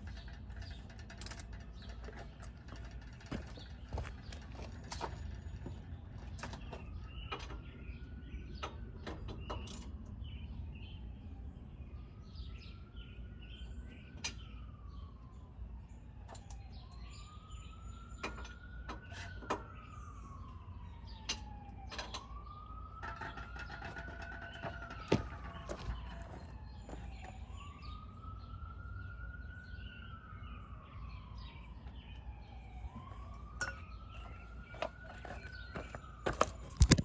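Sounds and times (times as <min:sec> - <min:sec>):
siren wailing: 0:16.6 - 0:37.0.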